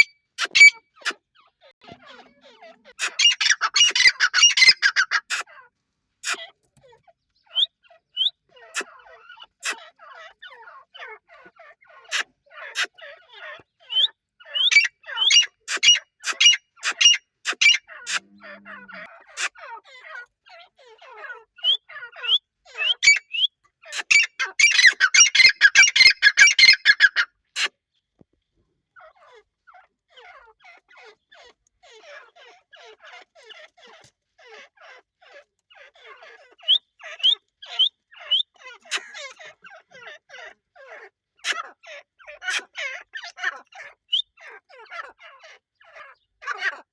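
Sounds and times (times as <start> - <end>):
birds calling and chirping: 0.0 - 5.6, 6.2 - 28.2, 28.9 - 46.9.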